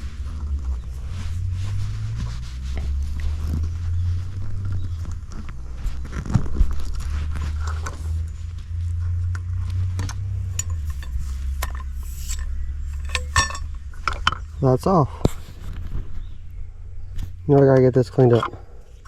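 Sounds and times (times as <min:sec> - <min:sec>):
low rumble: 0:00.0 - 0:19.0
hand tools clicking and clinking: 0:10.1 - 0:14.5, 0:18.1 - 0:19.0.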